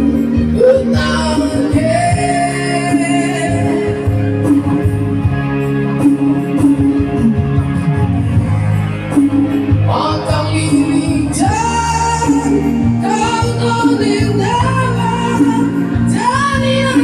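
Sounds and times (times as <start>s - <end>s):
person singing: 0.0s - 5.0s, 9.1s - 17.0s
guitar: 0.0s - 17.0s
low accompaniment: 0.0s - 17.0s.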